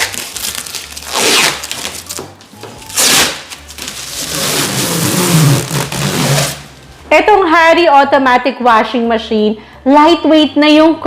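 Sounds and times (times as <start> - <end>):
plastic film rustling: 0.0 - 6.9.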